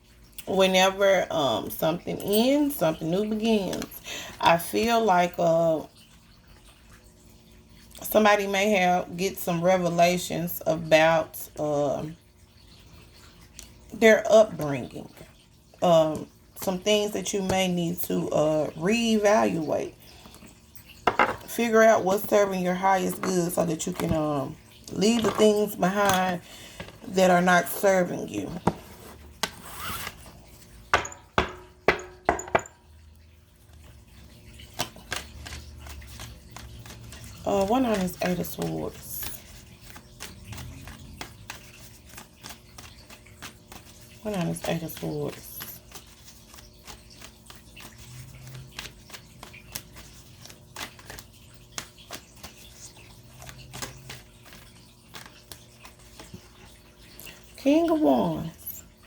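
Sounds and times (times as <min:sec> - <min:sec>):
faint steady hum: 0:00.0 - 0:59.0
cards tapping and clicking on table: 0:21.1 - 0:21.5, 0:31.0 - 0:32.7
cards rustling: 0:34.7 - 0:56.6.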